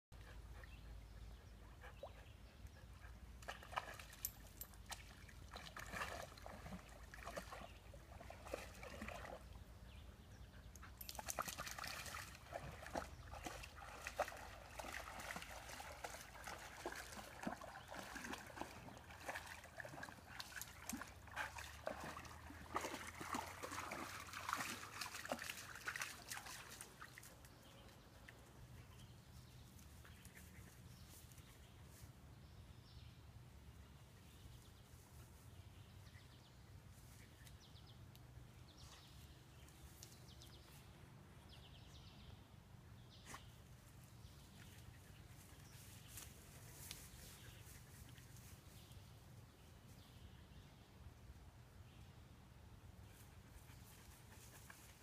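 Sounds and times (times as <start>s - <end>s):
water trickling and sloshing: 0.2s - 32.0s
small splashes and clicks: 3.4s - 9.5s, 10.7s - 29.0s, 39.6s - 40.6s.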